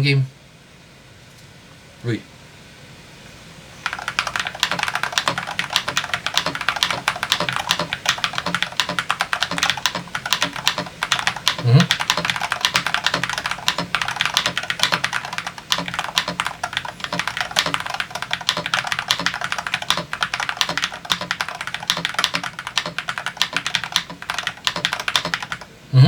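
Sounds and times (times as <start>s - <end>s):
fast typing on mechanical keyboard: 3.8s - 25.7s.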